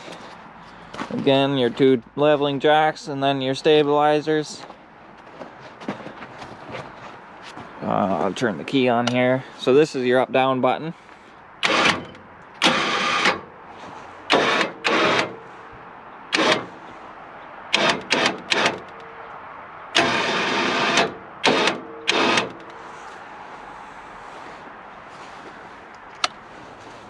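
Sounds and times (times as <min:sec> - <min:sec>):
electric winch running: 0:11.6 - 0:12.0, 0:12.6 - 0:13.4, 0:14.3 - 0:15.4, 0:19.9 - 0:22.7.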